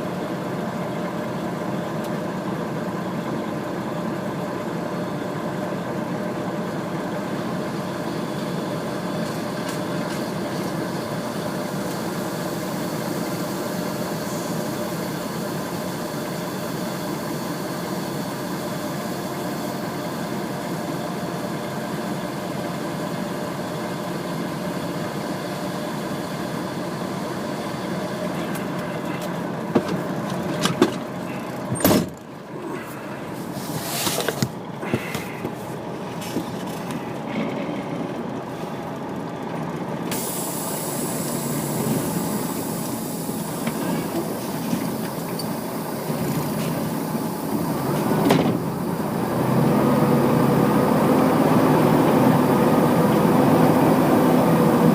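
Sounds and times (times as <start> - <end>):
heavy vehicle engine running: 0.0 - 54.9
air-brake hiss: 11.8 - 18.5, 32.6 - 36.4, 40.1 - 49.2.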